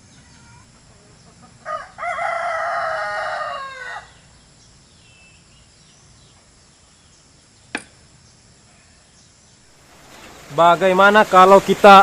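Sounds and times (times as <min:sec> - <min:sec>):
faint bird chirps: 0:00.0 - 0:02.0, 0:03.8 - 0:09.7
background hiss: 0:00.0 - 0:12.0.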